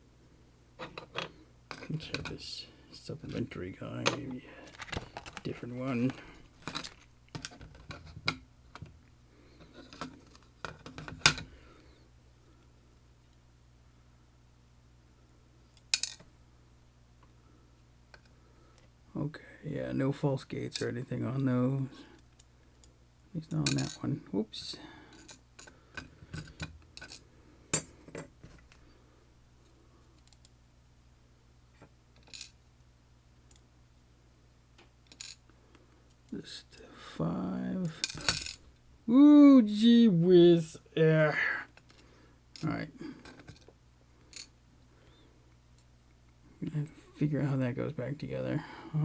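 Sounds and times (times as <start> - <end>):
faint hum: 0.0 - 49.0
small metal parts clicking and clinking: 25.1 - 28.3, 32.2 - 32.6, 35.0 - 35.4, 38.0 - 38.6, 44.3 - 44.5.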